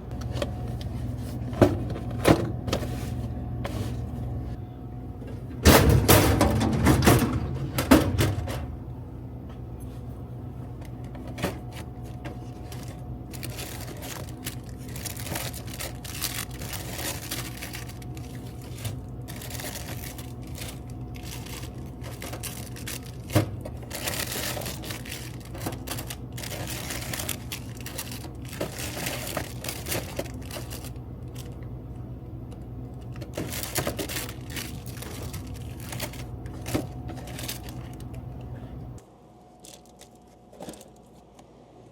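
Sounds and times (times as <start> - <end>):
steady low hum: 0.0 - 41.9
snack packets crinkling: 11.2 - 31.6, 32.5 - 38.6, 39.5 - 41.4.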